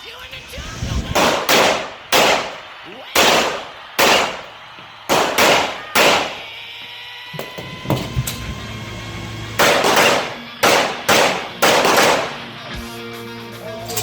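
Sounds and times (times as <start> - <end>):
handgun shots: 1.2 - 6.6, 9.6 - 12.6.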